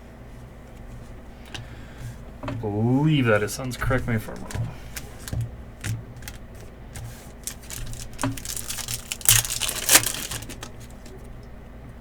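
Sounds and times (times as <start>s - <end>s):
cards clicking and tapping: 4.3s - 11.1s
packaging crinkling: 4.3s - 11.2s.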